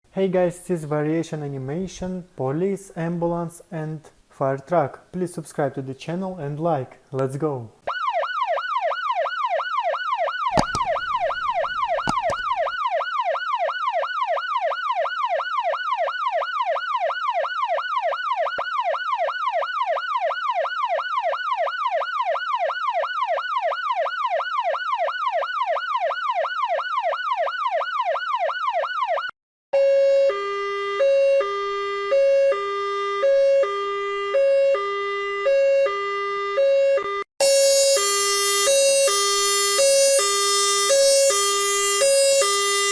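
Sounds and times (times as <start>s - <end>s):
electronic yelp siren: 7.9s - 42.9s
two-tone hi-lo siren: 7.9s - 42.9s.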